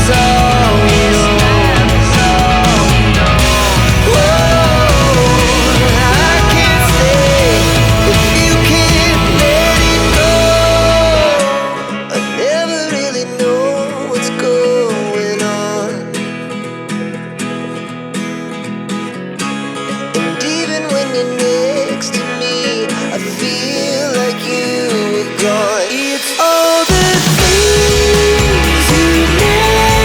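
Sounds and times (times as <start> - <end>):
song with steady beat: 0.0 - 11.8, 24.6 - 30.0.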